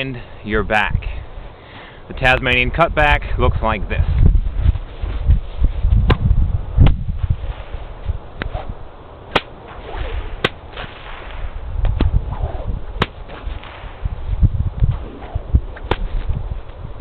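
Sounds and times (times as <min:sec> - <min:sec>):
whip cracking: 0:09.3 - 0:14.0, 0:14.9 - 0:16.3.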